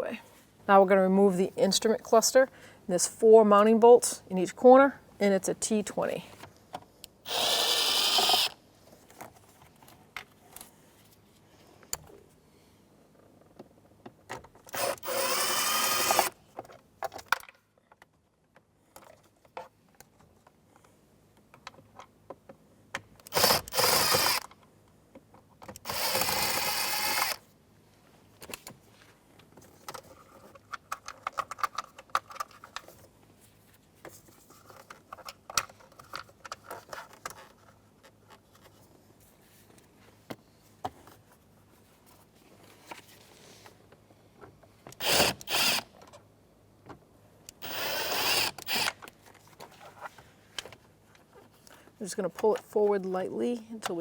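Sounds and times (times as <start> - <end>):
cordless drill whirring: 7.2 - 8.6, 14.7 - 16.4, 23.3 - 24.5, 25.9 - 27.4, 45.0 - 45.9, 47.6 - 49.0
clicks and handling noise: 28.4 - 33.2, 34.0 - 38.9.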